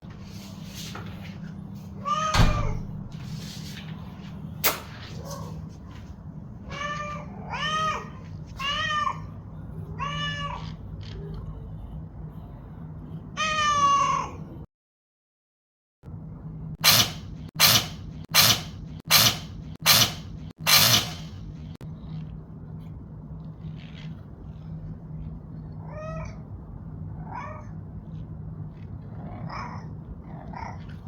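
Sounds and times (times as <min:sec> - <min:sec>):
steady low hum: 0:00.0 - 0:13.4, 0:16.1 - 0:31.0
cat meowing: 0:02.0 - 0:03.0, 0:06.6 - 0:11.3, 0:13.4 - 0:14.6, 0:25.8 - 0:26.4, 0:27.2 - 0:27.8.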